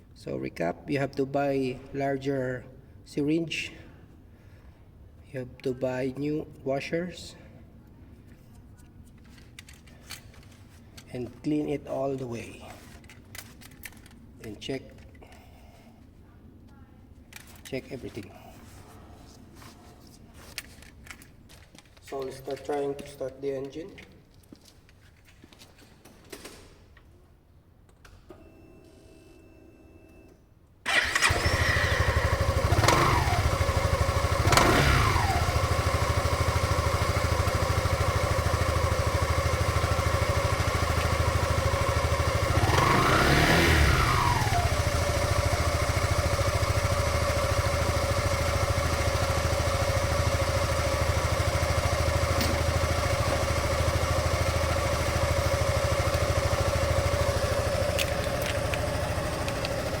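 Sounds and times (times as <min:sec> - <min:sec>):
scooter engine starting and idling: 0:30.8 - 1:00.0
engine revving: 0:30.9 - 1:00.0.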